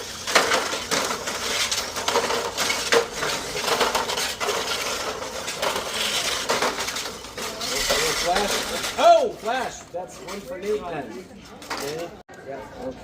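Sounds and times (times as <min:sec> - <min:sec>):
small robots clattering: 0:00.1 - 0:09.2.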